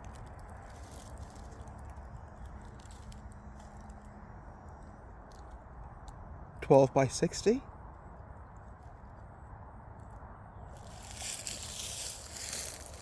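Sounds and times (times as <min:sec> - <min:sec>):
faint clicks and ticks: 0:00.0 - 0:06.2
steady low rumble: 0:07.7 - 0:13.0.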